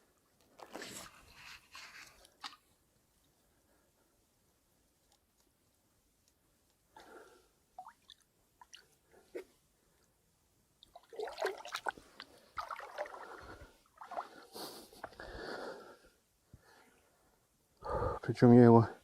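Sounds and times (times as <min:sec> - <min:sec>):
water splashing and dribbling: 0:07.8 - 0:09.4, 0:10.8 - 0:14.5.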